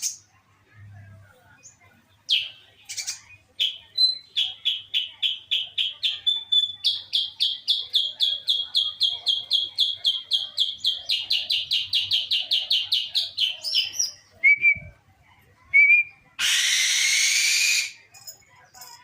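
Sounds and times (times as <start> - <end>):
eagle calling with high chirps: 16.4 - 18.0.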